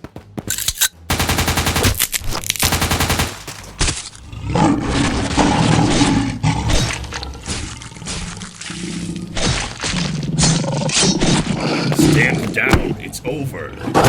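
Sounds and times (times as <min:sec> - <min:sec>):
automatic gunfire: 0:00.5 - 0:03.8.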